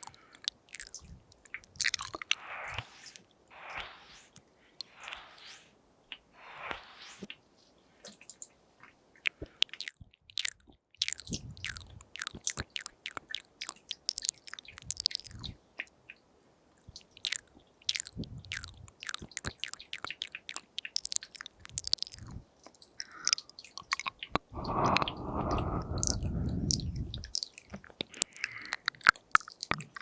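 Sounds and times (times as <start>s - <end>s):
wet tongue and lip smacks: 0.0s - 2.4s, 9.2s - 15.6s, 16.8s - 30.0s.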